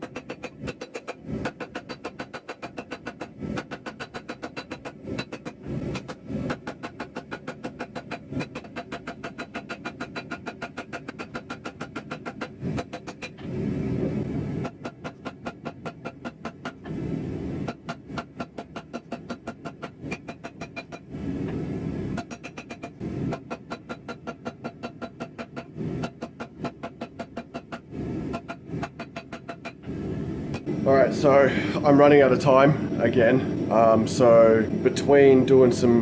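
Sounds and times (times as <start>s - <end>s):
hammer striking hot steel: 0.0s - 36.0s
low rushing noise: 27.8s - 36.0s.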